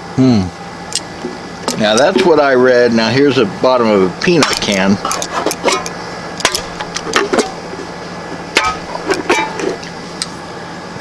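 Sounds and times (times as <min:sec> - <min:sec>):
knife blade scraping metal can: 0:04.4 - 0:07.6, 0:08.6 - 0:09.9.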